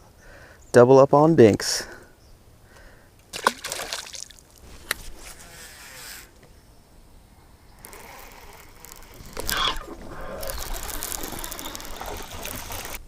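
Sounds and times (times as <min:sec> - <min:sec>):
water splashing and sloshing: 0:03.3 - 0:05.1, 0:08.8 - 0:13.0.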